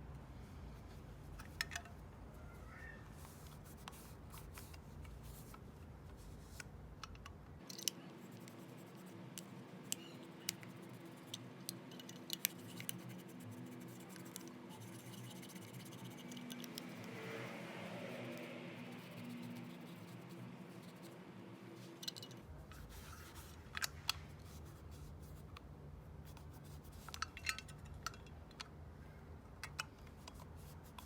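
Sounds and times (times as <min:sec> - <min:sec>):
faint steady hum: 0:00.0 - 0:31.0
metal parts clicking and scraping: 0:07.0 - 0:08.1, 0:11.2 - 0:13.0, 0:21.9 - 0:24.2, 0:26.9 - 0:28.6.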